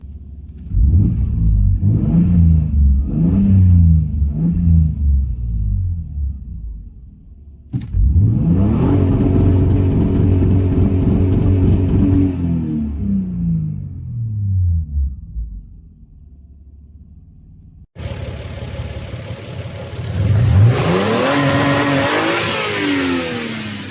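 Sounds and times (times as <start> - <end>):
car engine revving: 0.7 - 5.3, 7.9 - 13.6, 18.0 - 23.9.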